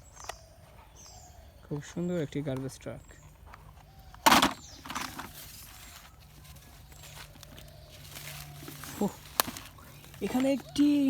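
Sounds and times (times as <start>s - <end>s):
plastic toy rustling and knocking: 3.8s - 6.0s.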